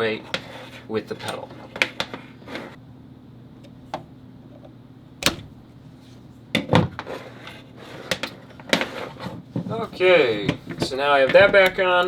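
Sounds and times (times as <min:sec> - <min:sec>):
metal parts clicking and knocking: 0:10.7 - 0:12.0.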